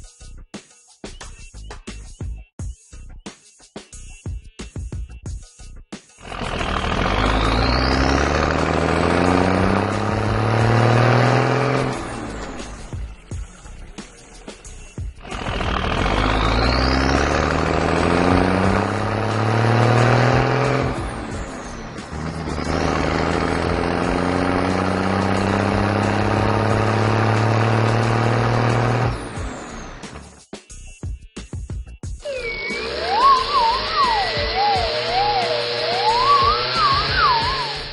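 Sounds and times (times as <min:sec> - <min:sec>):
vehicle engine accelerating: 0:06.2 - 0:30.4, 0:32.2 - 0:37.9.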